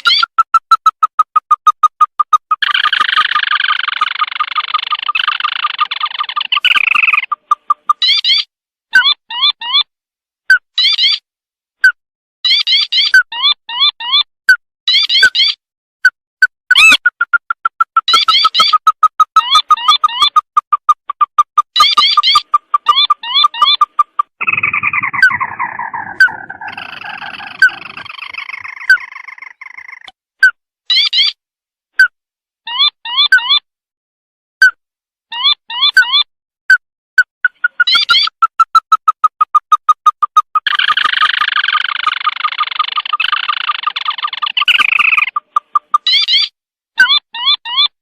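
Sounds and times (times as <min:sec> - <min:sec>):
bird calls with chattering trill: 0:00.0 - 0:09.9, 0:12.5 - 0:14.3, 0:16.7 - 0:30.1, 0:37.4 - 0:48.0
buzzing bird trill: 0:21.7 - 0:30.1.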